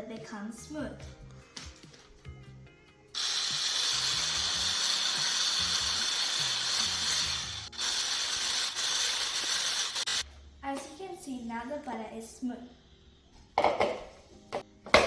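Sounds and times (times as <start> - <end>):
electric hand mixer running: 3.2 - 10.2.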